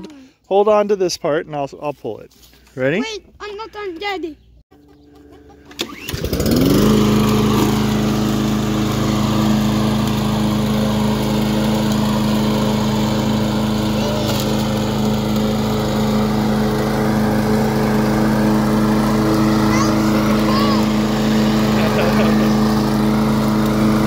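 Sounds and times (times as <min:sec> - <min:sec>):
lawn mower engine running: 0:04.8 - 0:24.0.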